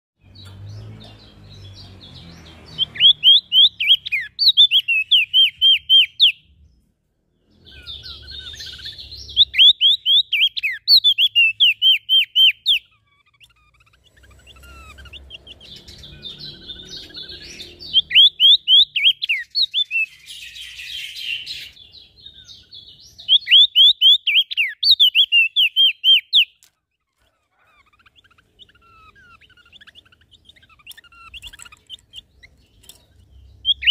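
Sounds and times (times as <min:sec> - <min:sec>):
quieter bird twittering: 0:00.2 - 0:06.8, 0:07.4 - 0:33.9
songbird whistling phrases: 0:02.7 - 0:06.4, 0:07.6 - 0:26.6, 0:33.6 - 0:33.9.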